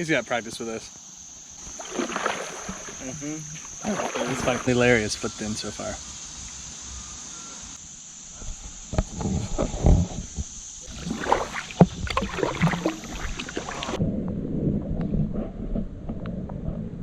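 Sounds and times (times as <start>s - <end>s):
paddle splashes: 1.4s - 5.0s, 10.8s - 14.0s
paddles knocking plastic hulls: 1.6s - 4.8s, 10.9s - 14.0s.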